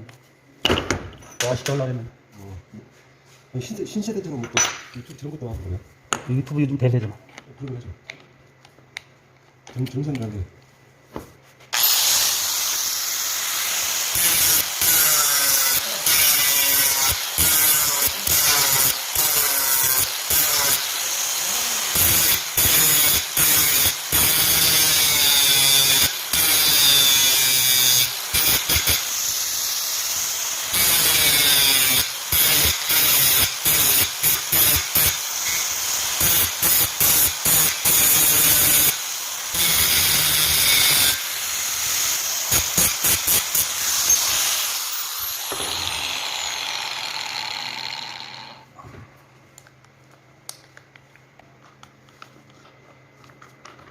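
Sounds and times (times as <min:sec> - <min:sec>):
hand-held power tool bursts: 0:11.7 - 0:48.6.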